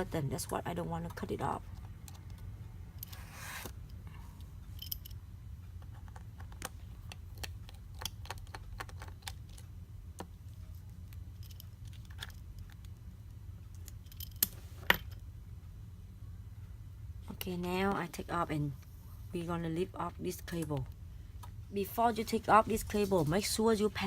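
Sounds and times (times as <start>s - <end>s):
low hum: 9.5s - 24.0s.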